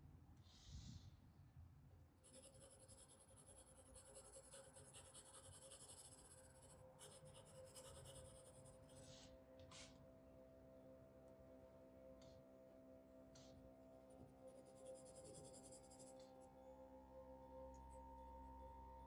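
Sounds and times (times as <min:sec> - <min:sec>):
pencil scratching on paper: 0:02.2 - 0:09.2, 0:14.5 - 0:16.1.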